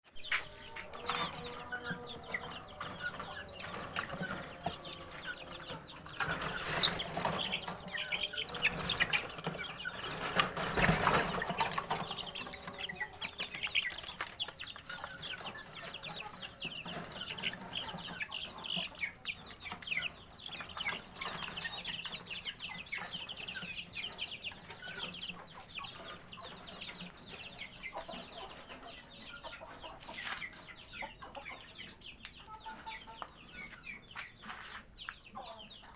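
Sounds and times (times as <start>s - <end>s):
chickens clucking: 0.1s - 35.9s
rustling and scuffling: 30.0s - 30.7s, 32.7s - 35.2s.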